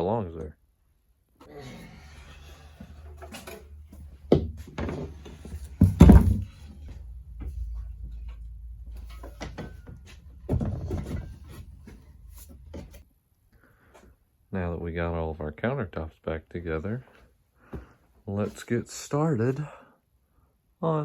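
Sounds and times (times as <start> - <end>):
low steady hum: 2.7 - 13.9
items knocking on wooden workbench: 4.3 - 6.6.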